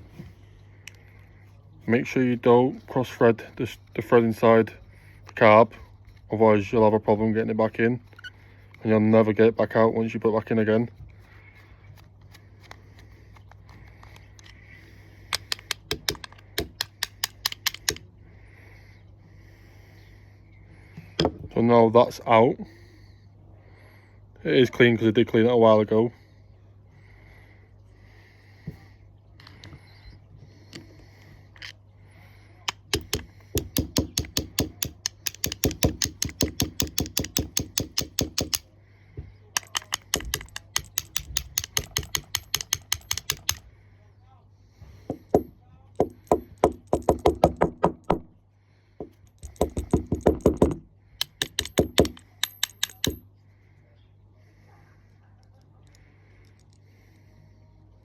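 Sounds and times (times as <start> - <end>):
low steady hum: 0.0 - 58.0
sharp hand tool clicks: 15.3 - 18.0, 32.7 - 38.7, 39.6 - 43.7, 45.1 - 48.2, 49.3 - 53.2.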